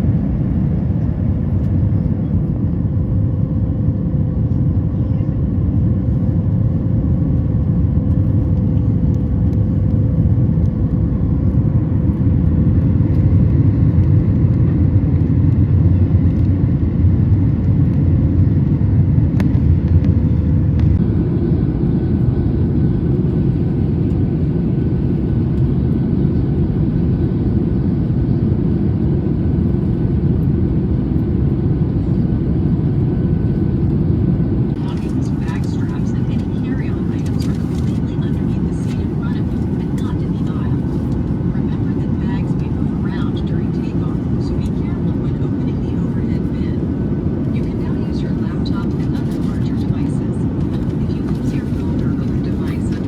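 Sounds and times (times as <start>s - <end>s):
airplane cabin engine drone: 0.0s - 53.0s
faint steady hum: 34.5s - 53.0s.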